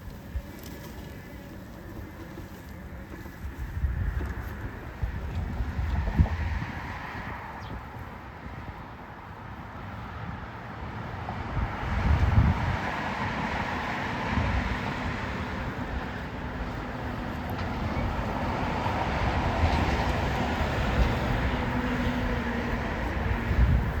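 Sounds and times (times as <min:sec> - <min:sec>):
lawn mower motor whirring: 0:00.0 - 0:08.1, 0:13.6 - 0:24.0.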